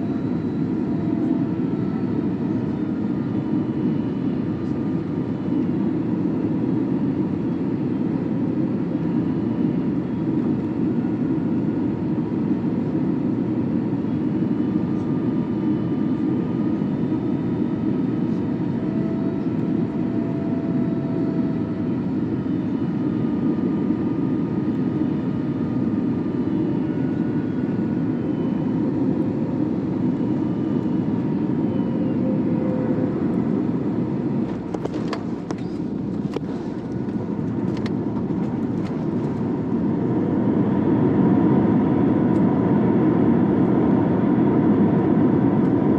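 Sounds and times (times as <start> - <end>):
jet engine and airflow cabin noise: 0.0 - 45.9.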